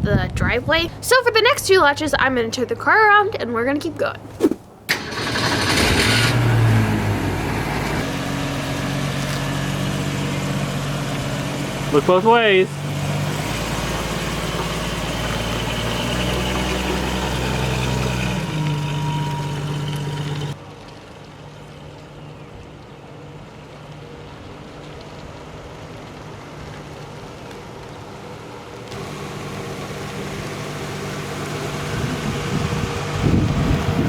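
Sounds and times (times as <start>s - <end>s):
car engine running: 28.9s - 34.0s.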